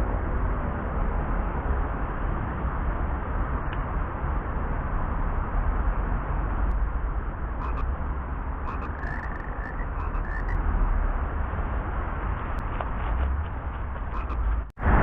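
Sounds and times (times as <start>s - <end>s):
low rumbling outdoor noise: 0.0s - 15.0s
frogs croaking: 7.6s - 7.9s, 8.6s - 10.6s.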